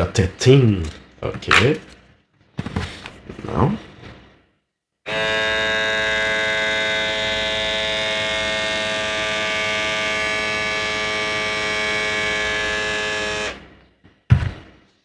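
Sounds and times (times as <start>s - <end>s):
electric shaver motor buzz: 5.1s - 13.6s.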